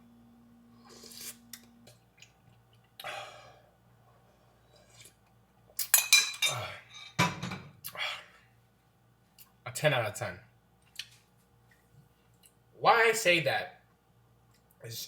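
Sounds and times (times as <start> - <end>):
person sipping broth: 0.8 - 2.3
dishware clinking: 6.0 - 7.6.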